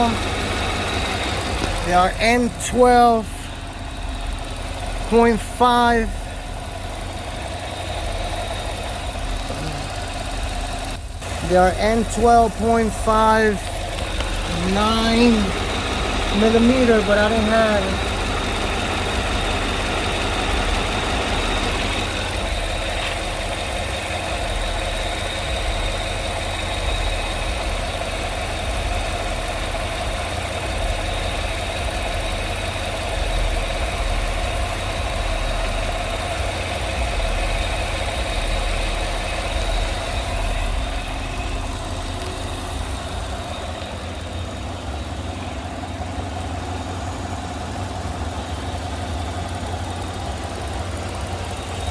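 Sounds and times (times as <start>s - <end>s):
car engine idling: 0.0s - 51.9s.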